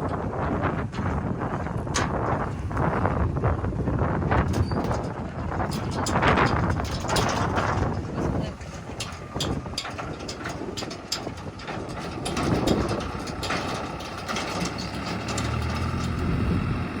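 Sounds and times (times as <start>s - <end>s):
diesel machinery running: 0.0s - 17.0s
sharp clicks and knocks: 4.4s - 16.3s.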